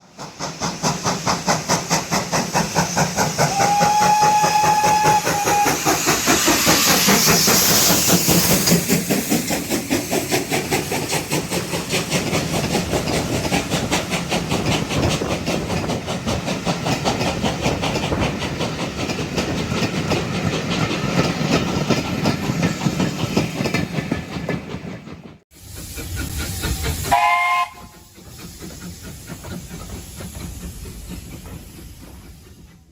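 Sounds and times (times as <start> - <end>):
steam hiss: 0.0 - 23.4, 25.5 - 32.9
steam locomotive exhaust beats: 0.0 - 32.9
rail clatter: 0.2 - 32.8
train whistle blast: 3.5 - 6.0, 27.1 - 28.0.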